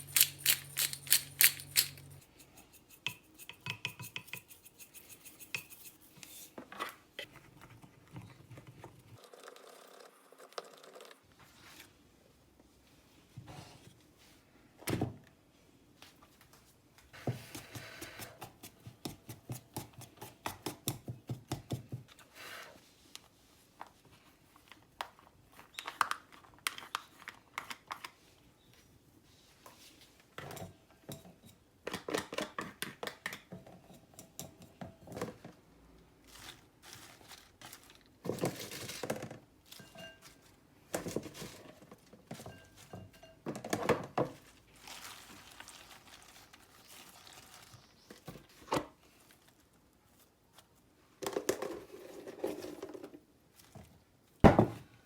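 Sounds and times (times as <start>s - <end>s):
kitchen clatter: 0.0s - 7.0s
rustling: 36.2s - 40.6s, 44.4s - 50.8s.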